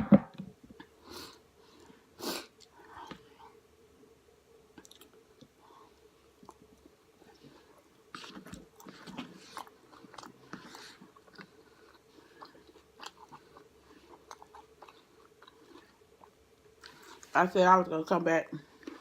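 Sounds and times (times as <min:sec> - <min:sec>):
faint steady hum: 0:00.0 - 0:19.0
person chewing food: 0:04.7 - 0:17.3, 0:18.6 - 0:19.0.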